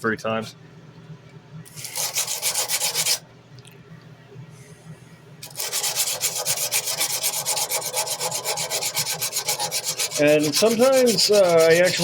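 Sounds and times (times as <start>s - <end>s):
sandpaper rubbing on metal blade: 1.7s - 3.2s, 5.4s - 12.0s.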